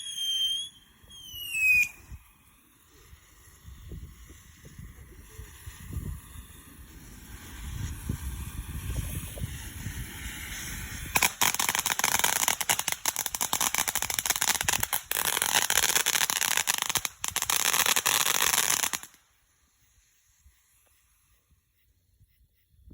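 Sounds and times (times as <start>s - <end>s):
low rumble: 1.9s - 11.1s
rapid crackling pops: 11.1s - 19.2s.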